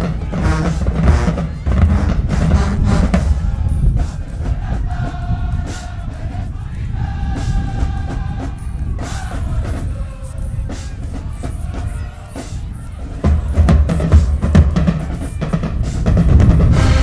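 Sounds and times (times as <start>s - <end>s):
marching band horns holding chords: 0.0s - 6.4s, 10.7s - 17.0s
steady drumming: 0.0s - 17.0s.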